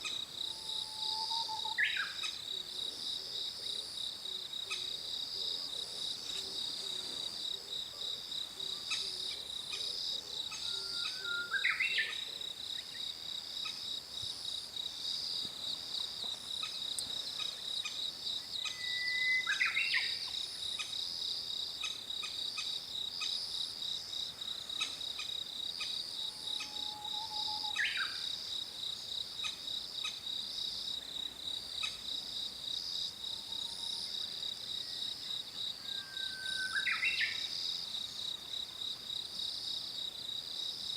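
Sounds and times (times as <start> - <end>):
insects trilling: 0.0 - 40.9.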